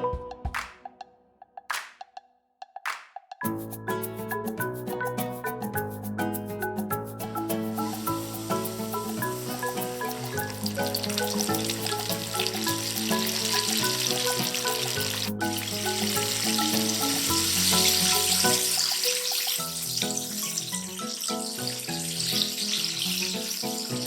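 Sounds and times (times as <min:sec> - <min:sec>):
light background music: 0:03.4 - 0:24.0
chicken deep-frying in oil: 0:07.8 - 0:24.0.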